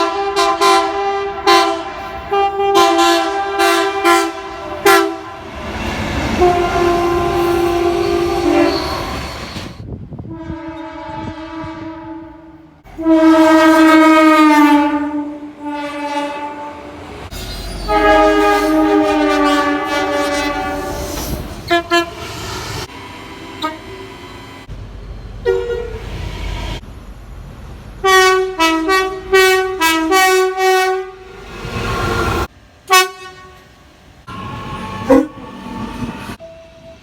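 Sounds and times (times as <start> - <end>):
train air horn: 0.0 - 9.7, 10.3 - 22.9, 23.5 - 24.1, 25.4 - 26.0, 28.0 - 33.7, 34.3 - 36.5
moving train rushing: 0.0 - 37.0.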